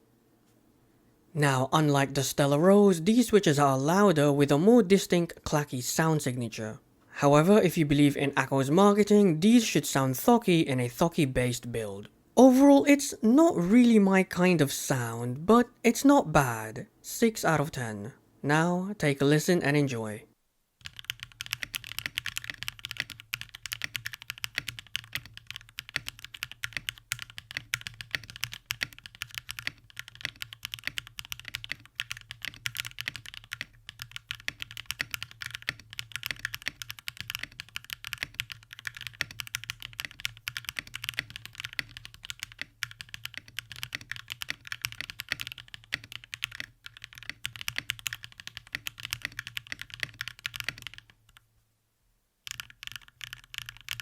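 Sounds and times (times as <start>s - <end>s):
fast keyboard typing: 20.8s - 51.4s, 52.4s - 54.0s.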